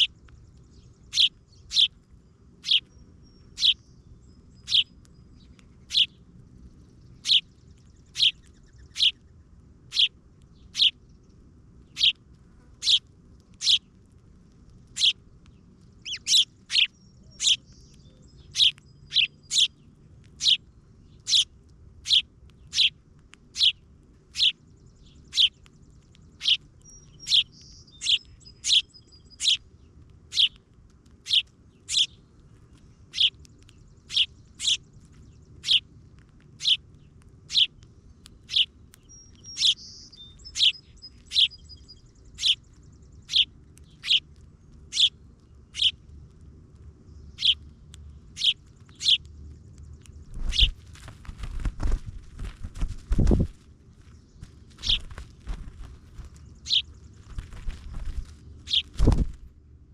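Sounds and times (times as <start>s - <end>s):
buzzy bird twitter: 0.0s - 2.0s, 2.6s - 11.2s, 11.9s - 12.2s, 12.8s - 13.0s, 13.6s - 13.9s, 14.9s - 15.2s, 15.9s - 19.8s, 20.4s - 29.6s, 30.3s - 30.6s, 31.2s - 32.2s, 33.1s - 35.9s, 36.6s - 36.8s, 37.5s - 44.3s, 44.9s - 46.0s, 47.2s - 47.6s, 48.3s - 50.8s, 54.1s - 55.2s, 55.8s - 59.4s
small bird chirping: 0.0s - 59.5s
low thumps and rustling: 50.3s - 53.7s, 54.4s - 56.4s, 57.2s - 59.5s.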